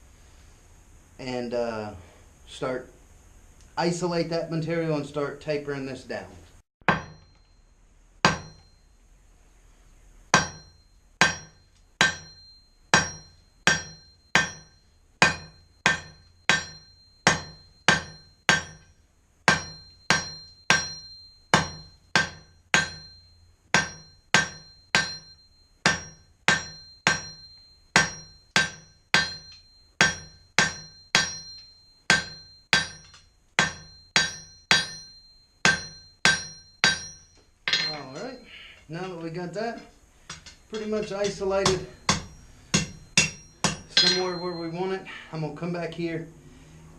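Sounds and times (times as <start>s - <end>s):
hammer striking steel on anvil: 6.8s - 7.6s, 8.2s - 8.8s, 10.3s - 45.1s.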